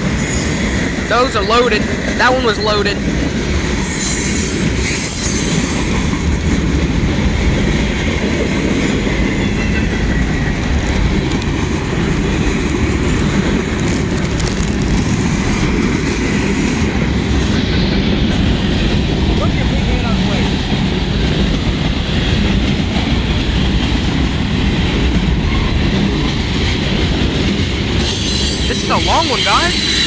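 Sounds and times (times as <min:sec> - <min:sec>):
freight train rumble and clatter: 0:00.0 - 0:02.2, 0:03.0 - 0:30.0
high wheel squeal: 0:03.6 - 0:06.1, 0:28.0 - 0:30.0.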